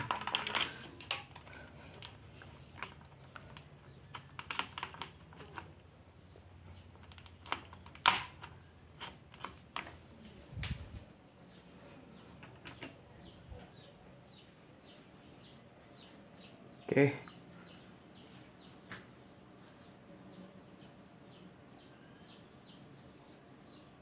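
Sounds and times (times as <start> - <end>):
clicks and knocks handling computer: 0.0 - 5.8, 6.7 - 10.0.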